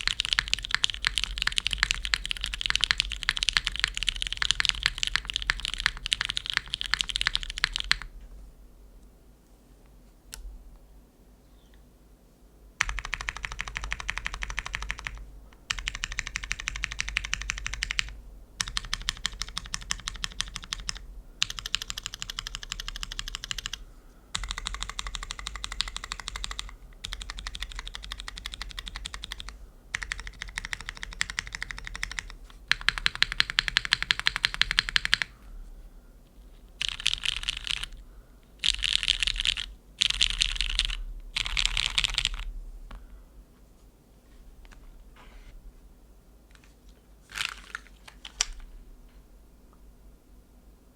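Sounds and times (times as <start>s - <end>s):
mechanical keyboard typing: 0.0s - 8.1s, 12.8s - 23.8s, 24.4s - 35.3s, 36.8s - 38.0s, 38.6s - 42.5s.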